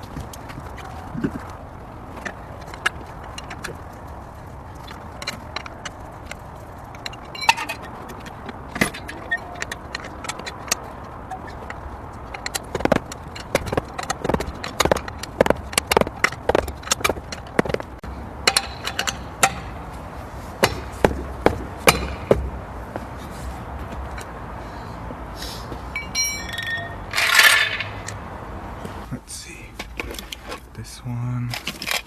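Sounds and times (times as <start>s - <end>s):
metal tools clinking: 2.2s - 20.0s, 25.9s - 28.2s, 31.4s - 32.0s.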